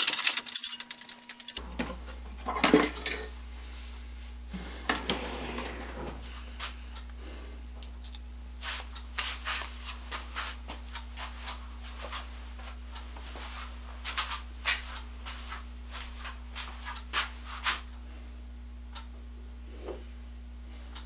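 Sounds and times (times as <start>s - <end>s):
small parts and tools clicking: 0.0s - 1.6s
steady low hum: 0.0s - 21.0s.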